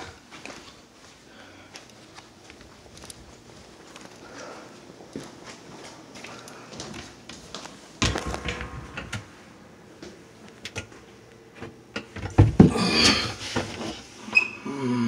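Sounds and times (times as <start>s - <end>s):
objects knocking and scraping in cabinet: 8.0s - 9.3s, 11.6s - 14.0s.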